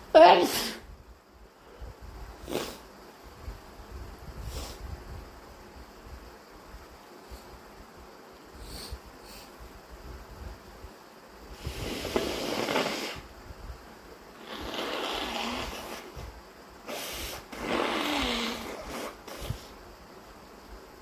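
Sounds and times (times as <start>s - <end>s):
person snorting breaths through nose: 2.4s - 2.9s, 4.4s - 4.9s, 8.6s - 9.6s, 11.5s - 13.3s, 14.4s - 19.8s.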